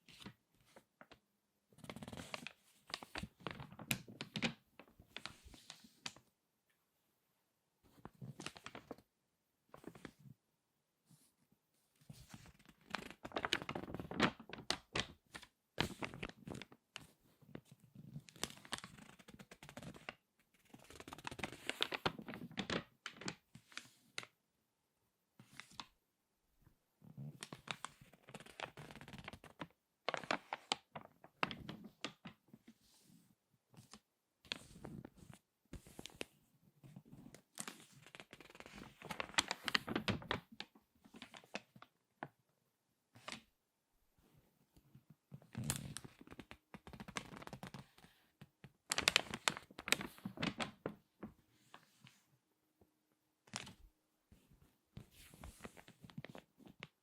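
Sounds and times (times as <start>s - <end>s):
magazine pages crackling: 1.9s - 6.2s, 12.2s - 17.1s, 18.4s - 23.4s, 27.4s - 32.4s, 37.6s - 41.9s, 45.6s - 48.1s, 48.9s - 51.0s, 53.5s - 53.8s.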